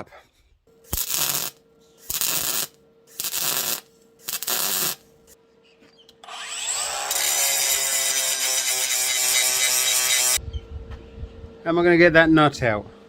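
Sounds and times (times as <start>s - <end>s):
harsh metalworking bursts on steel: 0.8s - 5.0s, 6.6s - 10.4s.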